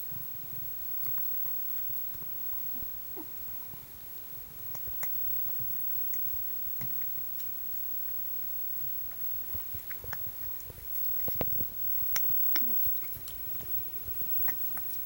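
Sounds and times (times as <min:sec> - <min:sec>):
cat tongue wet clicks: 0:09.1 - 0:15.0.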